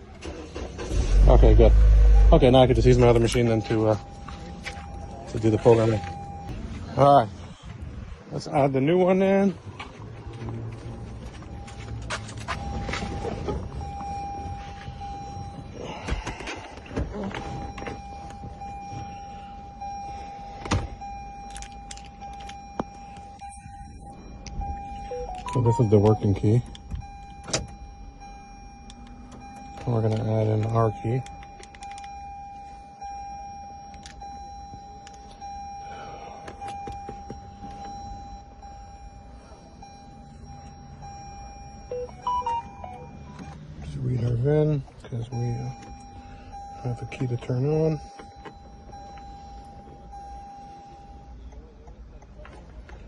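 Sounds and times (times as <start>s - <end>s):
faint steady high tone: 11.2s - 52.6s
short electronic beeps: 21.0s - 43.6s
keys and tools clicking: 21.3s - 23.5s, 24.4s - 27.8s, 28.8s - 32.2s
faint electronic tone: 22.8s - 27.2s.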